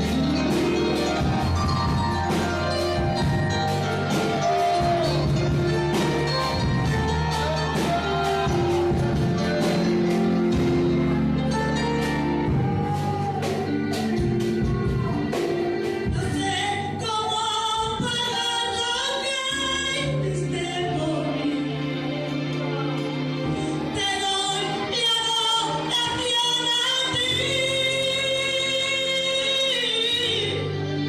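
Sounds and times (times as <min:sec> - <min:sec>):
drum strikes: 0:00.0 - 0:16.5
bass and keyboard notes: 0:00.0 - 0:31.0
person singing: 0:03.8 - 0:31.0.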